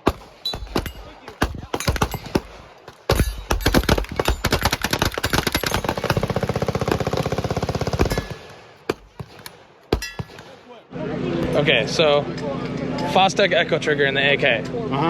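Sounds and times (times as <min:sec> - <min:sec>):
single gunshots: 0:00.0 - 0:07.0, 0:07.9 - 0:10.8
automatic gunfire burst: 0:00.0 - 0:10.7.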